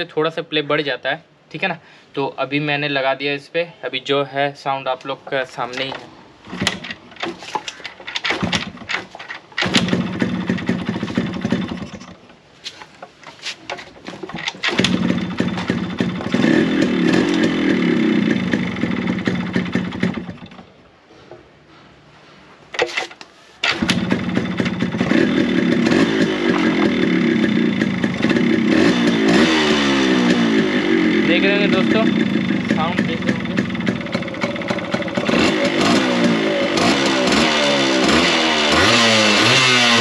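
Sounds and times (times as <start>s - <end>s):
engine kick-start rattling clicks: 5.8s - 12.4s, 13.8s - 20.7s, 22.8s - 29.2s, 31.7s - 38.2s
two-stroke motorcycle engine revving: 9.6s - 12.0s, 14.4s - 20.6s, 23.6s - 40.0s.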